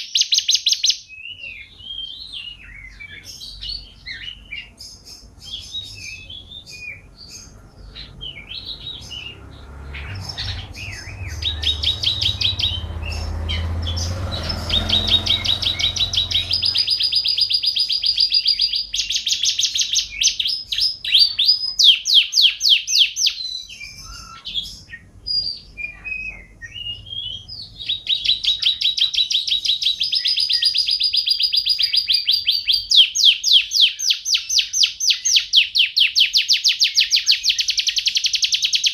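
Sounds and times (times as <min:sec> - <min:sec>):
canary singing trills: 0:00.0 - 0:38.9
low rumble: 0:07.6 - 0:17.3.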